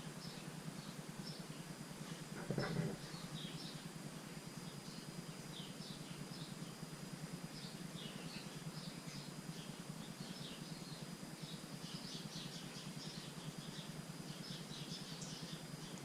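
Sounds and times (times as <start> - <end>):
small birds chirping: 0.0 - 16.0
steady low hum: 0.0 - 16.0
brief clatter: 2.3 - 3.0.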